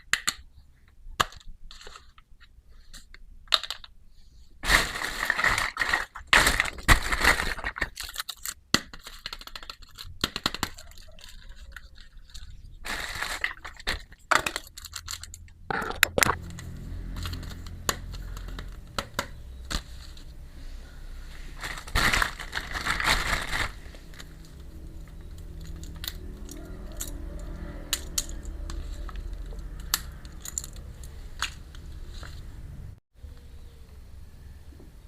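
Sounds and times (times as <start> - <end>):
toy kitchen pieces clicking: 1.1 - 4.0, 5.1 - 19.8, 24.2 - 31.9
rustling: 4.2 - 10.0, 16.3 - 32.6.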